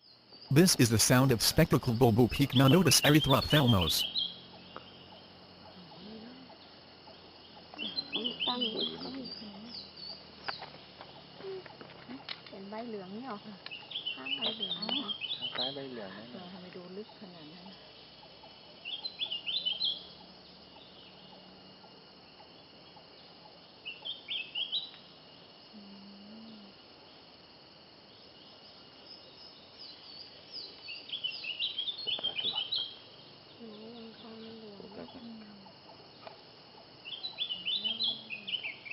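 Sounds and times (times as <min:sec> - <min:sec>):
faint steady hiss: 0:00.0 - 0:04.1
bird chirping: 0:00.0 - 0:11.2, 0:13.7 - 0:15.8, 0:17.7 - 0:21.5, 0:22.4 - 0:25.0, 0:29.1 - 0:34.5, 0:35.8 - 0:38.9
faint background hiss: 0:00.0 - 0:38.9.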